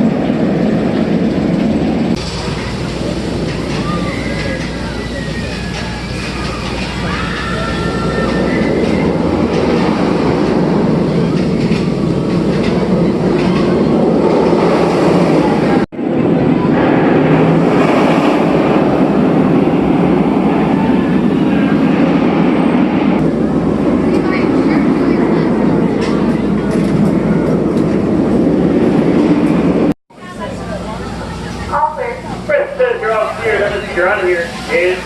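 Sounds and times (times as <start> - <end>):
roller coaster rumbling on track: 0.0 - 35.0.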